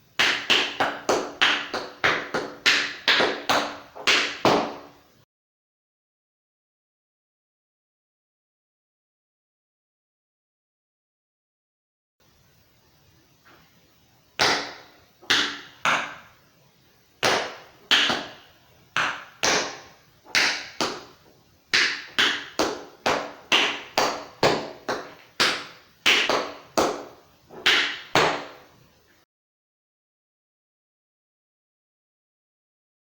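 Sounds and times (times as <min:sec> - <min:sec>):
tap shoes on hard floor: 0:00.2 - 0:04.9, 0:17.2 - 0:28.6.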